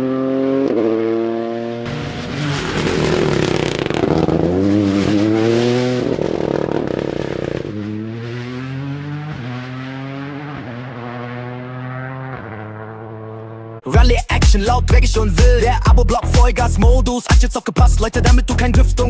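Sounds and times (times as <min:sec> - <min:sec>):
rally car engine revving: 0:00.0 - 0:13.9.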